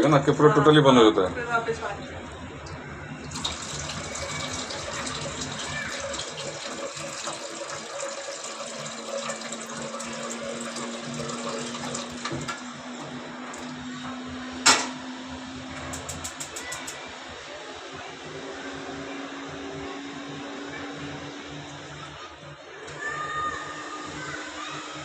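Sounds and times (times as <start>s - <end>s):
water running into drum: 3.2s - 13.9s.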